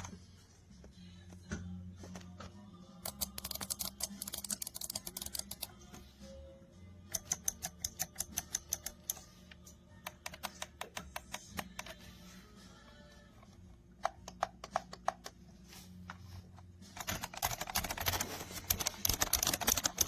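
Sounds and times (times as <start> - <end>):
keypad keys clicking: 3.0 - 5.7, 7.1 - 9.2, 10.0 - 12.0, 14.0 - 15.4, 17.0 - 20.0.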